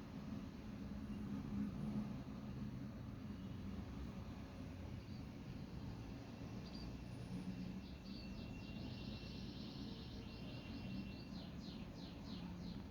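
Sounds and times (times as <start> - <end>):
small birds chirping: 7.9 - 12.9.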